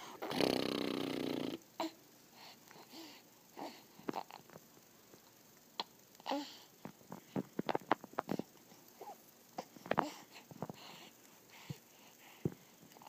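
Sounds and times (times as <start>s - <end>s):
baby grunting: 0.0s - 2.0s
soft baby vocal sounds: 0.0s - 4.6s, 5.8s - 13.0s.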